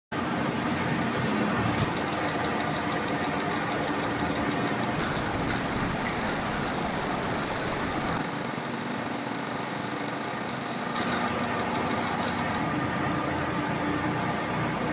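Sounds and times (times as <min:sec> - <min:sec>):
metal lathe humming: 0:01.8 - 0:12.6.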